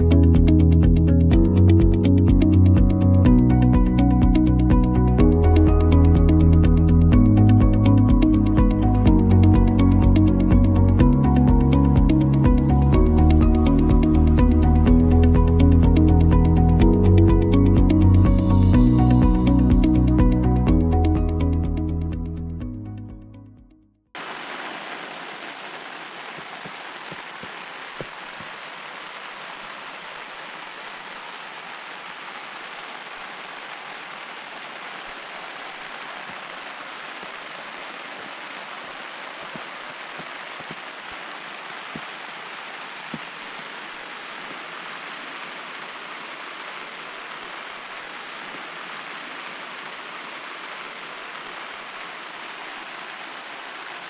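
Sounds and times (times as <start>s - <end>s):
steady rain: 24.2s - 54.0s.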